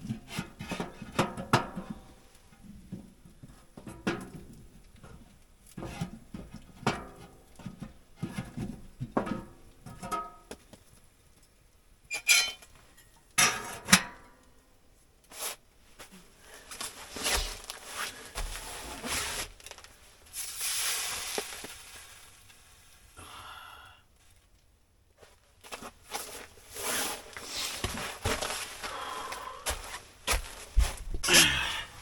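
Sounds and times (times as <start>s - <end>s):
rustling and scraping: 0.0s - 11.0s, 15.2s - 23.2s, 24.2s - 29.0s, 29.7s - 31.2s
sharp metallic clanks: 12.1s - 12.7s.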